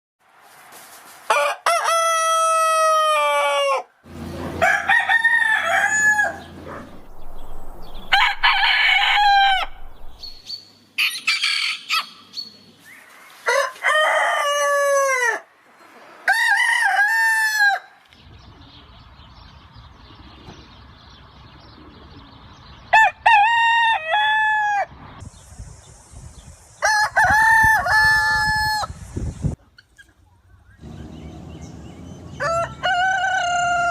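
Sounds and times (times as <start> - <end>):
rooster crowing: 1.3 - 3.9, 4.6 - 10.4, 13.5 - 15.5, 16.3 - 17.9, 32.3 - 33.9.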